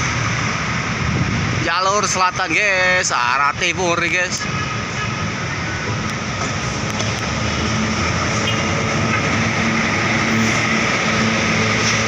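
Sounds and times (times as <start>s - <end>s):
heavy road traffic passing: 0.0s - 12.0s
heavy vehicle engine drone: 0.0s - 12.0s.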